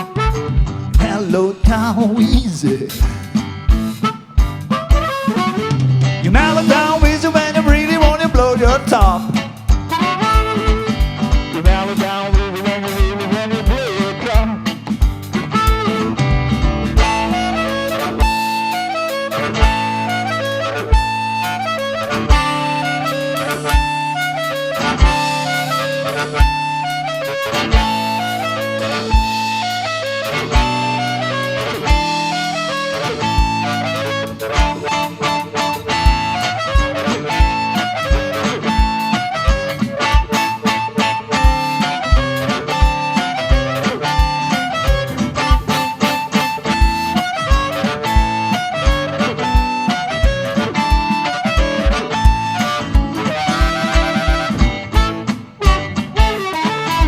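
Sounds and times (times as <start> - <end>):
bass guitar: 0.0 - 57.0
electric guitar: 0.0 - 57.0
harmonica lead: 0.0 - 57.0
kick drum beat: 49.6 - 56.4.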